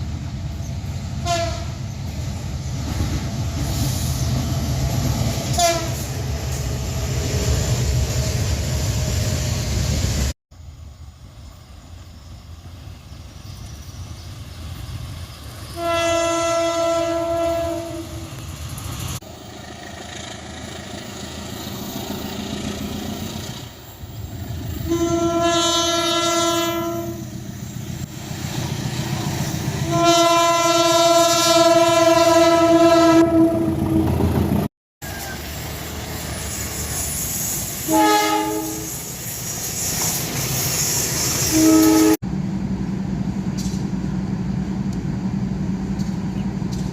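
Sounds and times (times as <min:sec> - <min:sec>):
train rumble: 0:00.0 - 0:46.9
locomotive horn blasts: 0:01.2 - 0:01.8, 0:05.5 - 0:06.1, 0:15.8 - 0:18.2, 0:24.9 - 0:27.2, 0:29.8 - 0:33.7, 0:37.9 - 0:39.0, 0:41.5 - 0:42.2.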